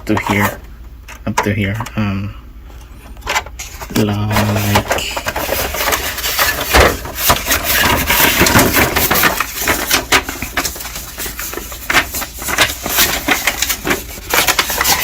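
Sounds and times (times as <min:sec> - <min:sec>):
plastic parts clicking and knocking: 0:03.2 - 0:15.0
paper rustling: 0:03.6 - 0:15.0.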